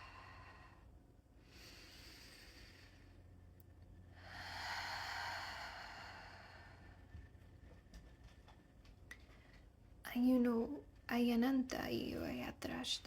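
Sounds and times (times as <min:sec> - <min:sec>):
person breathing out: 0:04.2 - 0:07.1.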